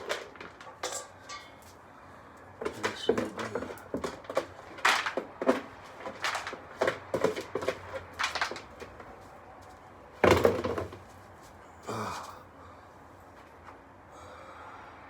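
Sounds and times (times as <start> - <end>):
objects knocking and clattering: 0.0 - 1.8, 2.6 - 9.2, 10.2 - 11.1.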